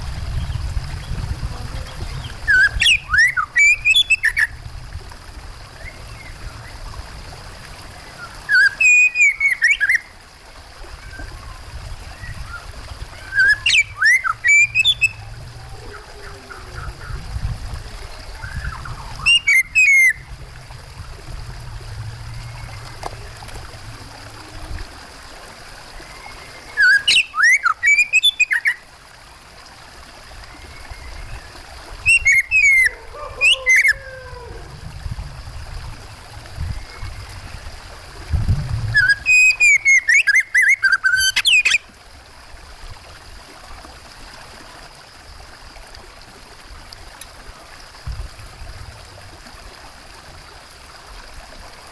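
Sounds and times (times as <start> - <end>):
running water trickling: 0.0 - 51.9
bird singing whistles and chirps: 1.9 - 4.6, 8.2 - 10.1, 13.2 - 15.3, 18.3 - 20.3, 26.2 - 28.8, 32.1 - 34.4, 38.9 - 41.8.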